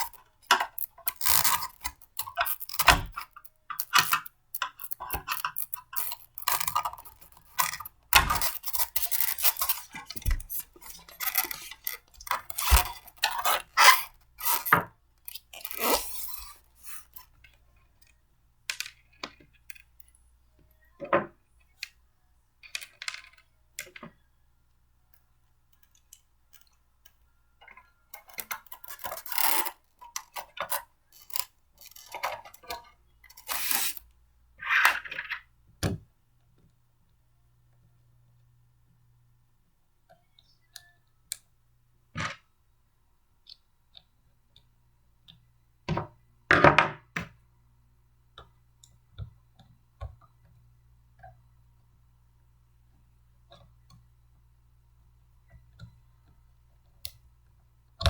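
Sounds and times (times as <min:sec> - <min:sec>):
blender parts clicking and knocking: 0:00.0 - 0:17.3, 0:27.6 - 0:34.0.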